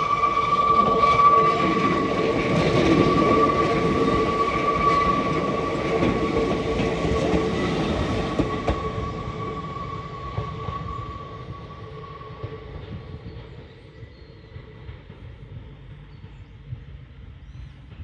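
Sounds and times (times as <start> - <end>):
electric train rumbling past: 0.0 - 18.0.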